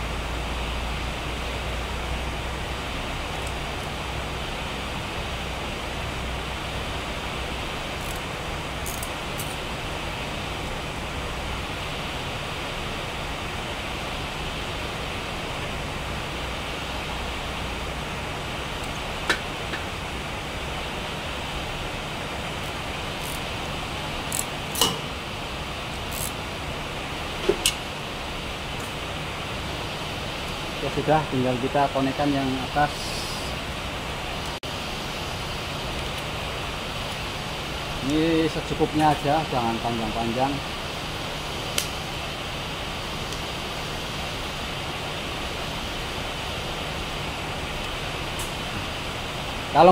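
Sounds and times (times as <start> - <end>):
background hiss: 0.0 - 49.9
crimping tool clicks: 24.3 - 25.0.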